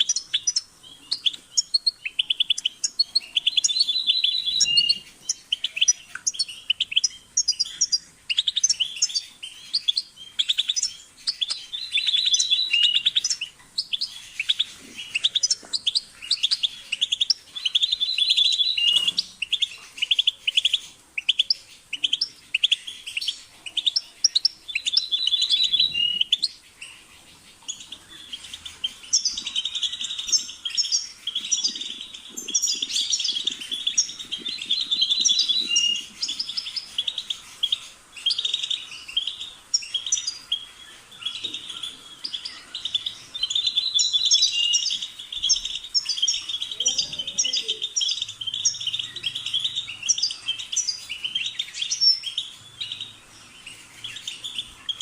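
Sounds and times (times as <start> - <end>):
finch twittering song: 0.0 - 55.0.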